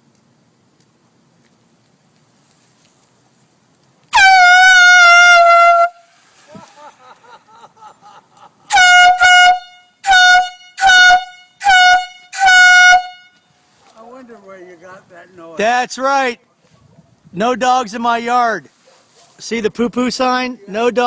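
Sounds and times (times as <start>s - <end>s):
air horn blasts: 4.1s - 6.1s, 8.7s - 13.6s.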